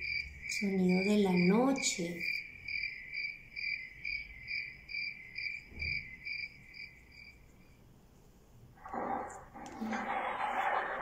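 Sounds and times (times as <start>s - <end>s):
crickets chirping: 0.0s - 7.9s
rushing noise: 8.8s - 11.0s.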